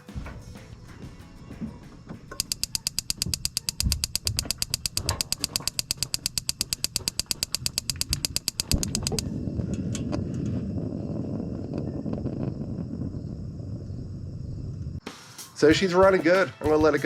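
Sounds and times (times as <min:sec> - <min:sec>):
spark igniter clicking rapidly: 0:02.4 - 0:09.3.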